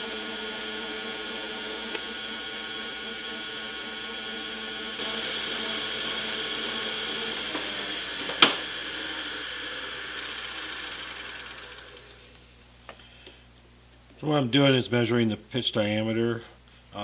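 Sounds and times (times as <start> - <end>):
metal lathe gear whine: 0.0 - 12.6.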